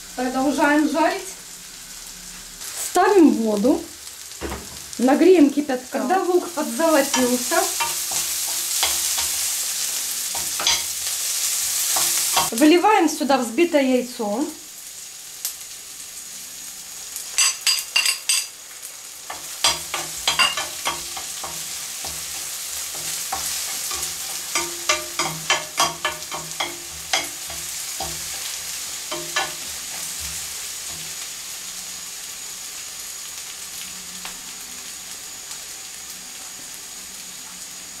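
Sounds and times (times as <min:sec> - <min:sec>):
egg sizzling in oil: 0:00.0 - 0:12.8, 0:14.5 - 0:38.0
utensil knocking against pan: 0:23.0 - 0:28.3.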